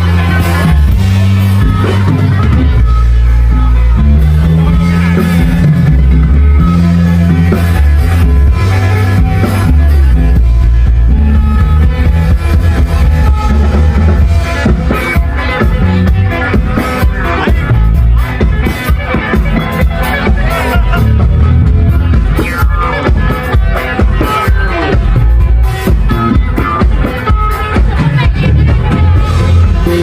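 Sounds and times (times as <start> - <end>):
bass line: 0.0 - 30.0
drum kit: 0.0 - 30.0
plucked string lead: 0.0 - 30.0.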